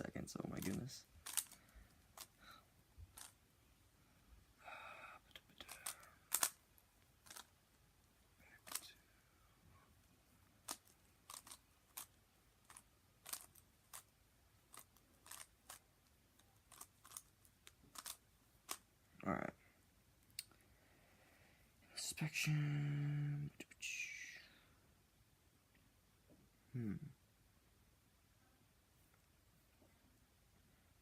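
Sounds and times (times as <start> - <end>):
puzzle cube plastic clicks: 0.6 - 2.4, 3.1 - 3.4, 5.5 - 7.6, 8.6 - 8.9, 10.6 - 18.9.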